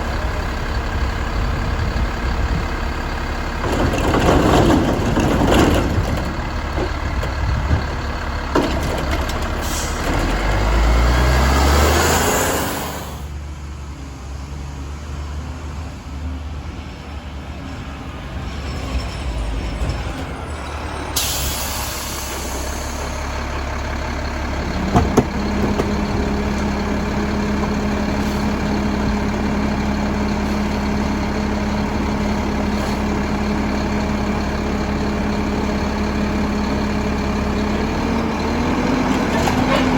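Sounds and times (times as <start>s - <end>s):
garbage truck diesel engine: 0.0s - 39.9s
air brake hiss: 9.6s - 10.1s, 12.4s - 13.3s, 21.2s - 23.2s.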